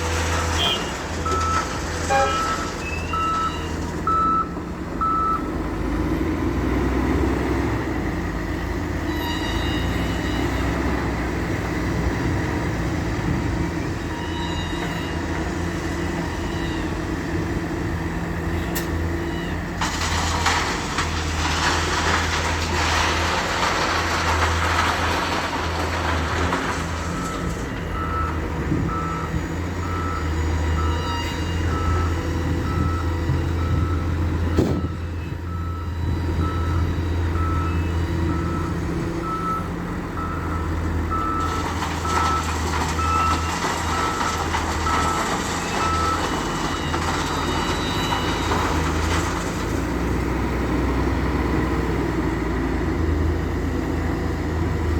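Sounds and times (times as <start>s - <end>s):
diesel machinery droning: 0.0s - 54.9s
reversing alarm beeping: 0.6s - 5.5s, 14.1s - 15.3s, 27.2s - 48.8s.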